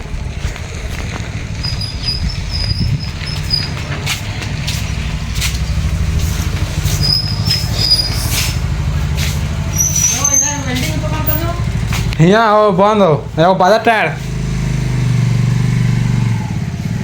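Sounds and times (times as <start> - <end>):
vehicle engine running: 0.0 - 17.0
high chirps: 1.6 - 3.9, 4.8 - 11.5.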